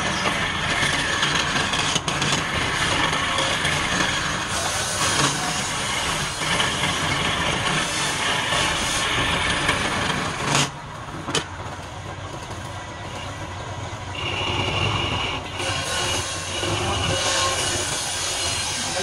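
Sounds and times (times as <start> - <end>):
wood-turning lathe running: 0.0 - 19.0
steady high whine: 13.0 - 19.0.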